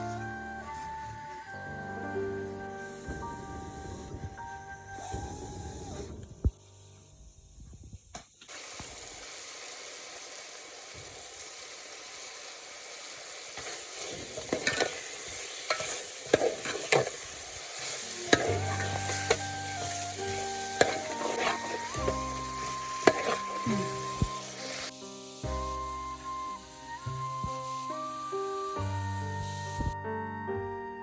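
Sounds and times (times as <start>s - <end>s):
background music: 0.0s - 6.0s, 18.0s - 31.0s
vegetables sizzling in a pan: 8.4s - 30.0s
stirring clicks and scrapes: 13.6s - 15.0s, 15.6s - 17.2s, 18.3s - 24.4s.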